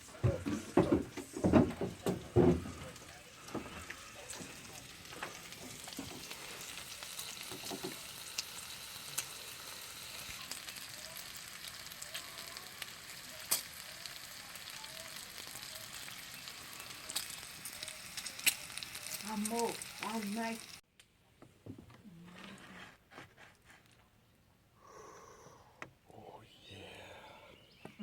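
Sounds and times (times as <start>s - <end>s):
steady hiss: 0.0s - 20.8s
sharp crackles and clicks: 3.8s - 9.4s, 10.0s - 21.1s.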